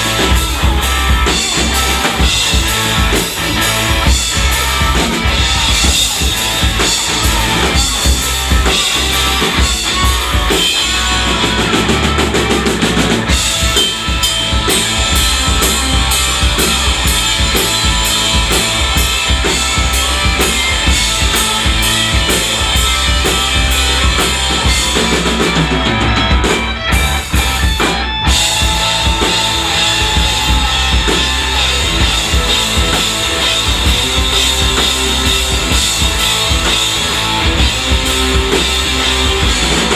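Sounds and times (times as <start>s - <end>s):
rapid drum hits: 0.0s - 39.9s
rock band playing live: 0.0s - 39.9s.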